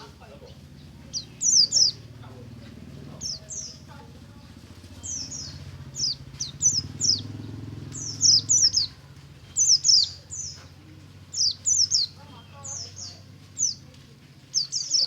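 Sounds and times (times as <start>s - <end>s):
songbird singing high notes: 5.0s - 10.6s.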